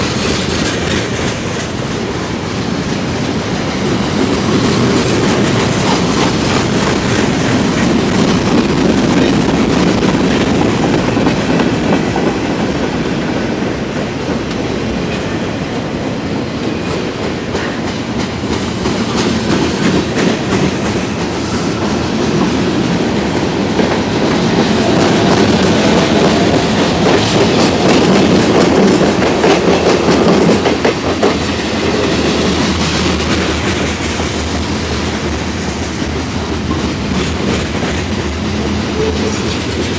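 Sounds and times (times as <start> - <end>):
freight train rumbling past: 0.0 - 39.9
wheels clicking over rail joints: 0.0 - 39.9.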